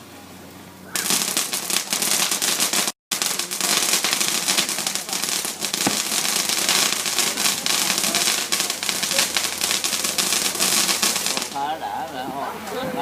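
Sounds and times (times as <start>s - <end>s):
fireworks crackling: 0.0s - 13.0s.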